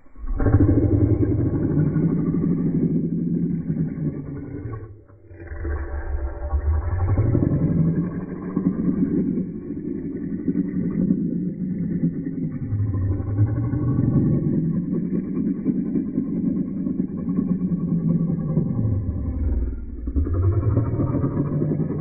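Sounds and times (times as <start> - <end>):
engine-like rumble: 17.5 - 22.0.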